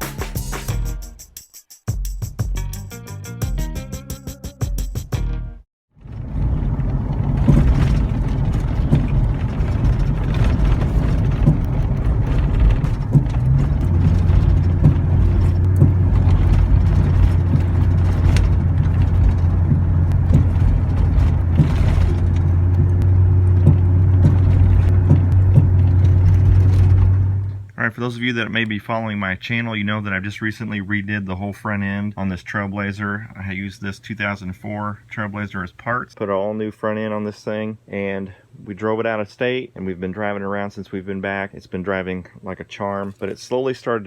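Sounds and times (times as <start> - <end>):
road and engine rumble: 6.0 - 36.2
clunks from car front end: 6.1 - 27.7
steady low hum: 6.2 - 28.0.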